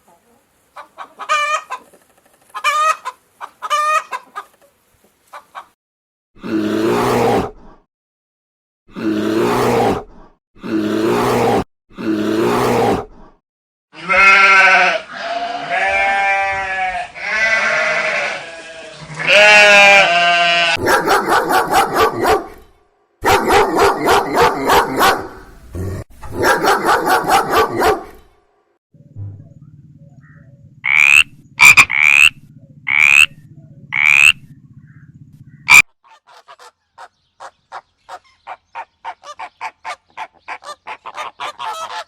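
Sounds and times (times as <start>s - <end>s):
goats bleating: 14.0s - 20.8s.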